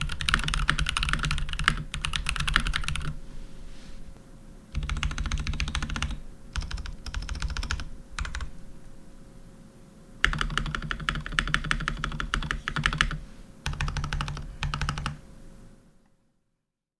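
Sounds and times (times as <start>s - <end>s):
mechanical keyboard typing: 0.0s - 3.2s, 4.8s - 8.5s, 10.2s - 15.2s.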